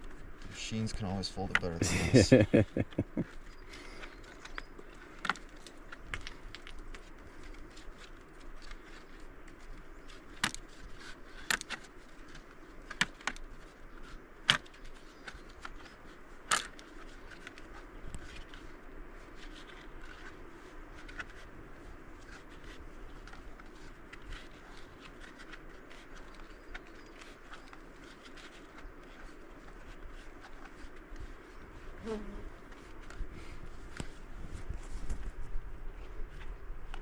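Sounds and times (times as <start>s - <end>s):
folding stick clicks and rattles: 4.0s - 18.7s, 21.0s - 21.5s.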